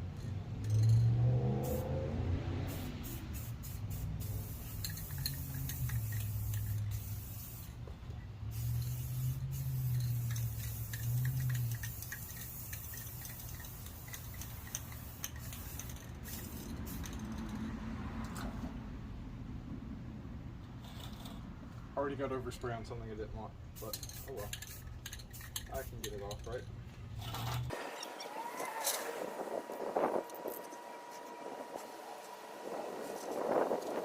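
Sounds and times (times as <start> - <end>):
spray paint can hissing: 1.6 - 1.9, 2.7 - 7.8, 8.5 - 17.4, 23.8 - 26.1
wind buffeting microphone: 29.0 - 34.0.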